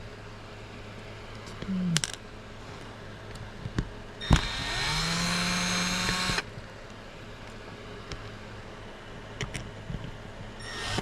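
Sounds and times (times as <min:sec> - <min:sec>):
drill-driver spinning: 0:04.2 - 0:06.4, 0:10.6 - 0:11.0.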